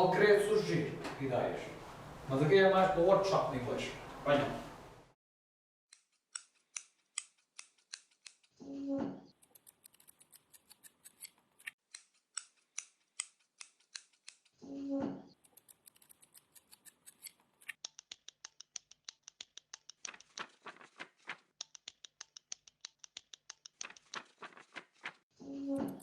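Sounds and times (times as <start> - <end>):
rapid sharp clicks: 15.4 - 25.2.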